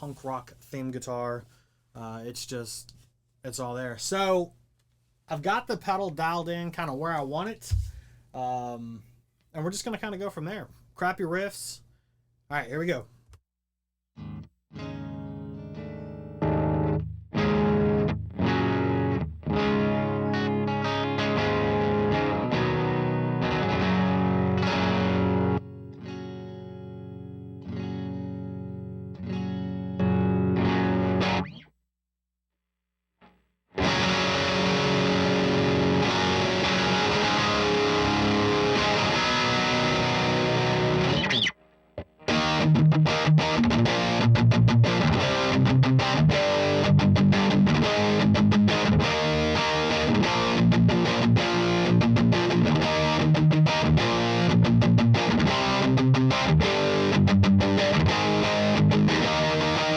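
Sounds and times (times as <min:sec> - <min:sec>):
overdriven electric guitar riffs: 0:14.2 - 0:31.7, 0:33.7 - 0:59.9.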